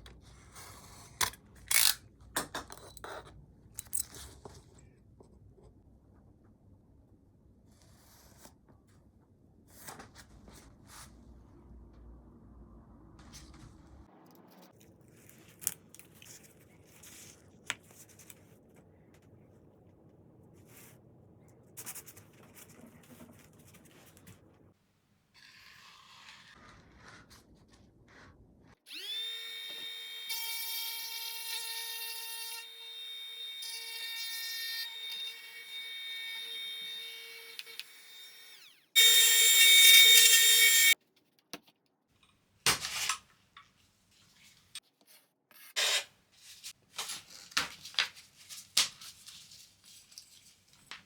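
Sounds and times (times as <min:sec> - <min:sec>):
trim router whining: 0:28.9 - 0:41.0.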